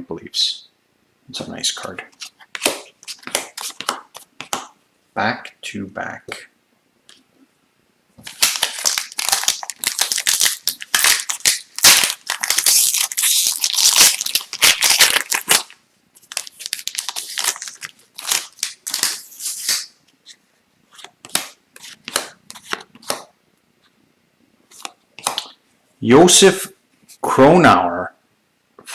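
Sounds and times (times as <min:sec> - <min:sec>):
foil wrapper crinkling: 0:08.3 - 0:19.9.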